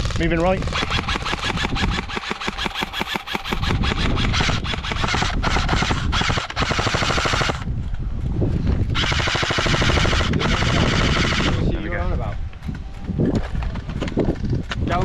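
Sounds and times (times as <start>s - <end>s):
airsoft rifle automatic fire: 0.0s - 7.7s, 8.9s - 11.6s.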